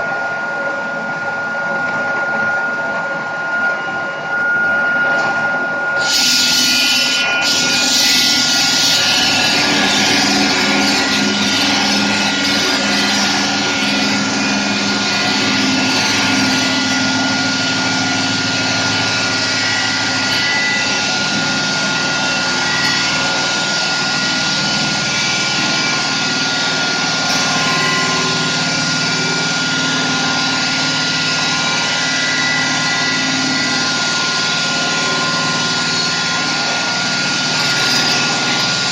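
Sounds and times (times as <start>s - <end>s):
stone-cutting saw whining: 4.7s - 38.9s.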